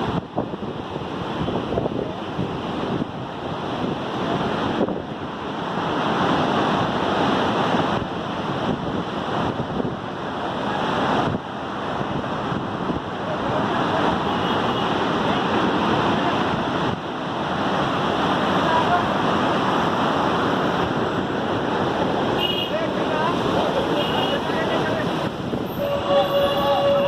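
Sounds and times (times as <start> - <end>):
wind buffeting microphone: 0.0 - 14.2, 14.9 - 27.0
floodwater rushing from dam: 0.0 - 27.0.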